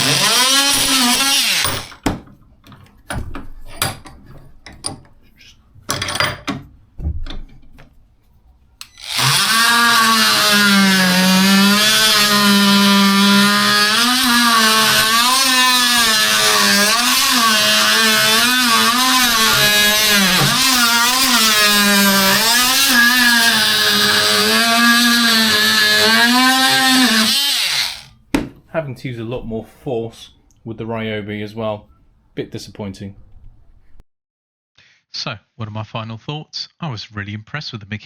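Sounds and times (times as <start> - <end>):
oscillating multi-tool cutting wood: 0.0 - 2.0, 8.8 - 28.1.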